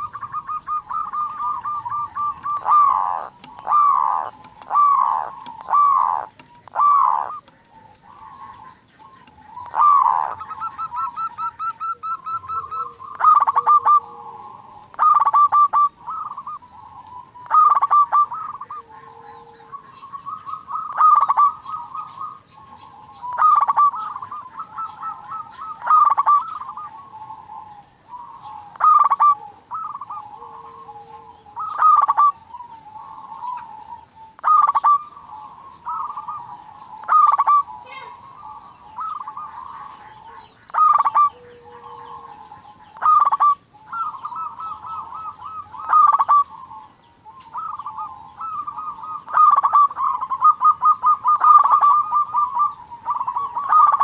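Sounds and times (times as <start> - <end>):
doves cooing: 0.0 - 54.0.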